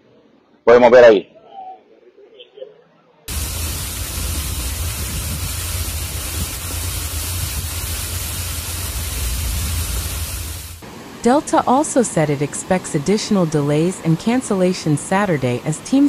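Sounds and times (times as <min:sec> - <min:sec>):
deep rumble: 0:03.3 - 0:10.8
heavy rain rushing: 0:03.3 - 0:11.6.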